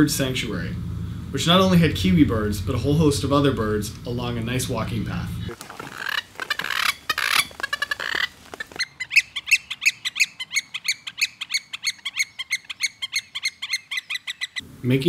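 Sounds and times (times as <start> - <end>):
birds chattering and chirping: 5.2 - 14.6.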